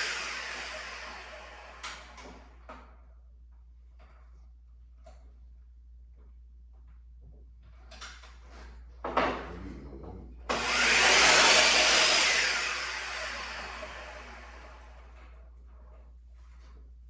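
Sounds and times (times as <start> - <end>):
electric power saw running: 0.0 - 2.4, 10.5 - 15.2.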